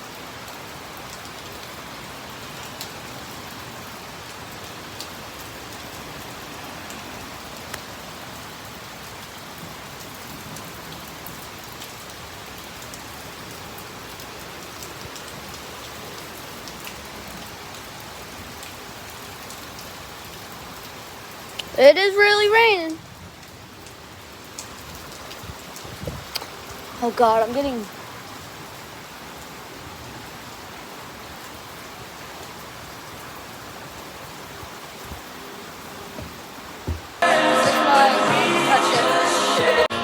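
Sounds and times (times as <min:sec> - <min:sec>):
heavy rain falling: 0:00.0 - 0:40.0.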